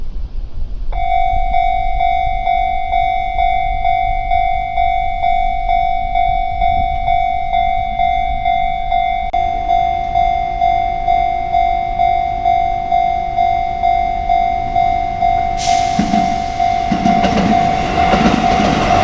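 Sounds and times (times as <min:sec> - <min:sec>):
level crossing warning bell: 0:01.0 - 0:19.0.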